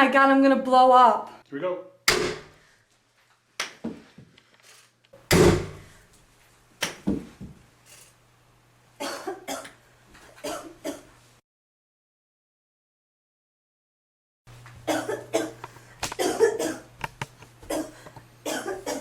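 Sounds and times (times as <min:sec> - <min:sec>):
woman coughing: 0:09.0 - 0:09.7, 0:10.4 - 0:11.1, 0:14.9 - 0:15.6, 0:16.2 - 0:16.9, 0:17.7 - 0:19.0.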